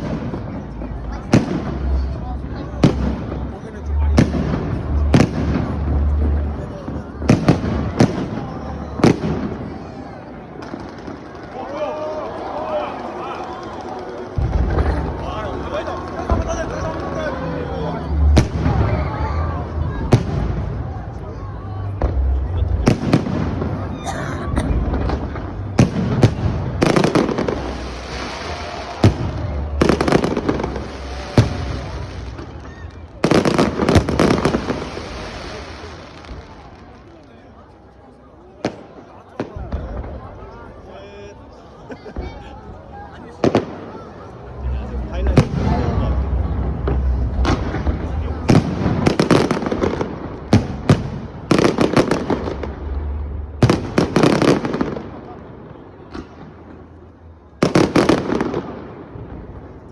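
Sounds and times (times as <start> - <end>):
fireworks crackling: 0.0 - 24.0, 24.6 - 41.5, 42.2 - 59.9
rolling rumble: 42.2 - 56.8.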